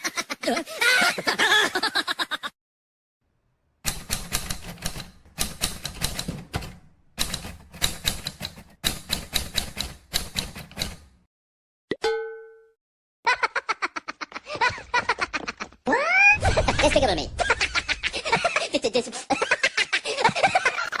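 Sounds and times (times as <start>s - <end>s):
rapid typing keystrokes: 3.9s - 11.2s
voice-like sound effect: 16.0s - 17.5s.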